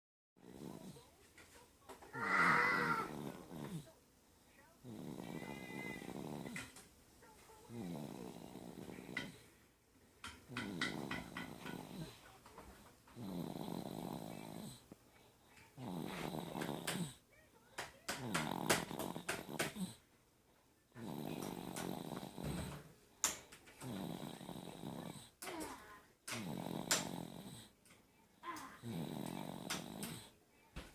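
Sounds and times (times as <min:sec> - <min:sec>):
person snoring: 0:00.4 - 0:01.0, 0:02.1 - 0:03.9, 0:04.8 - 0:06.7, 0:07.7 - 0:09.4, 0:10.5 - 0:12.2, 0:13.2 - 0:14.8, 0:15.8 - 0:17.2, 0:18.2 - 0:20.0, 0:21.0 - 0:22.8, 0:23.8 - 0:25.6, 0:26.3 - 0:27.7, 0:28.8 - 0:30.3
clicks and snorts: 0:10.2 - 0:12.2, 0:15.8 - 0:17.2, 0:17.8 - 0:20.0, 0:21.0 - 0:27.6, 0:28.6 - 0:30.4.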